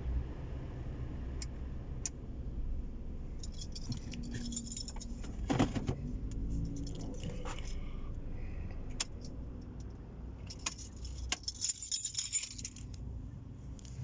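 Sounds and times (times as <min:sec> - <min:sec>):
clinking and rattling: 0:03.4 - 0:05.8, 0:10.4 - 0:13.0.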